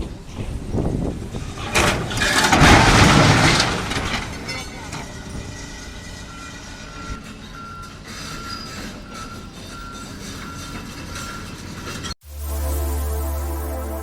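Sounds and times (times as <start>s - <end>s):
engine rumble: 0.0s - 14.0s
reversing alarm beeping: 5.1s - 11.8s.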